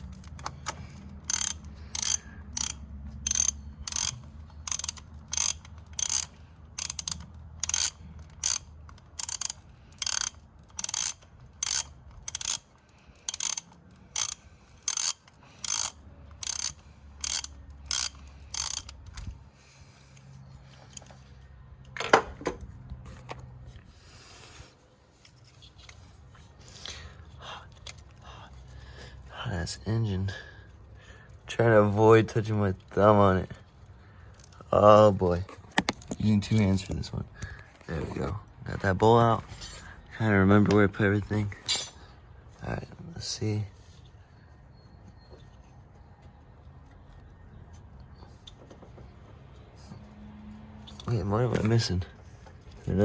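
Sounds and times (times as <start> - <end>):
ratchet wrench clicking: 0.0 - 19.4.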